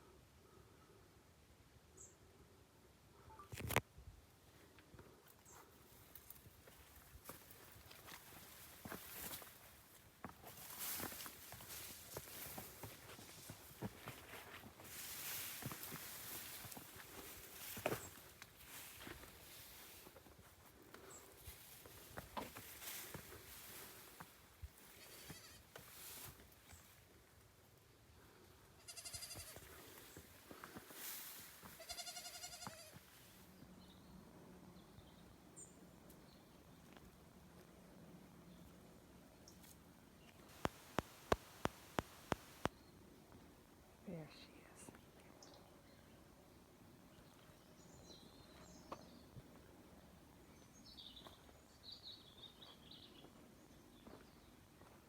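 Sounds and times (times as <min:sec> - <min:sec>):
distant goat bleating: 0:25.0 - 0:25.6, 0:28.8 - 0:29.7, 0:31.8 - 0:33.0.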